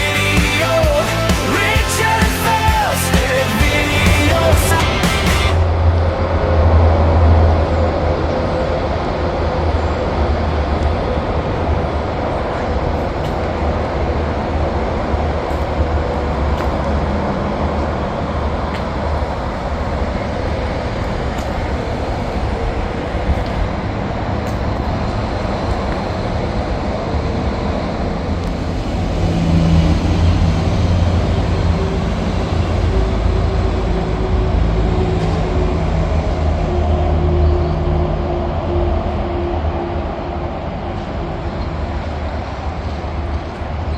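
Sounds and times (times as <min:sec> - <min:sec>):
diesel train engine humming: 0:00.0 - 0:43.9.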